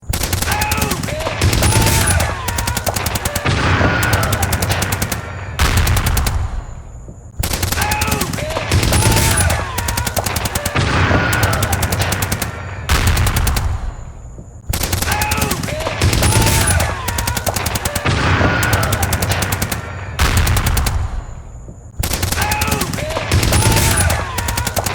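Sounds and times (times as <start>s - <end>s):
automatic gunfire: 0.0s - 6.7s, 7.4s - 14.1s, 14.7s - 21.4s, 22.0s - 24.9s
people screaming and yelling: 0.4s - 5.6s, 7.7s - 12.9s, 15.0s - 20.2s, 22.2s - 24.9s.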